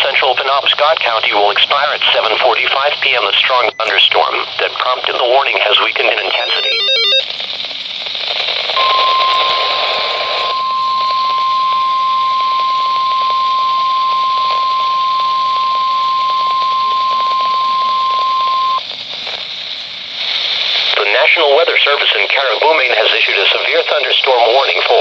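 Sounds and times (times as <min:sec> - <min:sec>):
radio hiss: 0:00.0 - 0:25.0
steady alarm tone: 0:06.2 - 0:07.3, 0:08.8 - 0:18.8.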